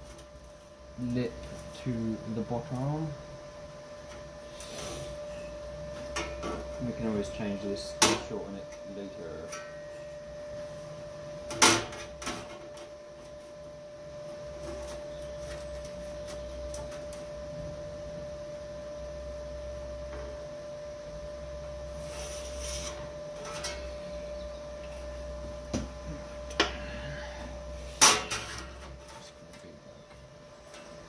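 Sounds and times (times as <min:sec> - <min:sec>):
steady hum: 0:00.0 - 0:31.0
short scrape: 0:22.0 - 0:23.0.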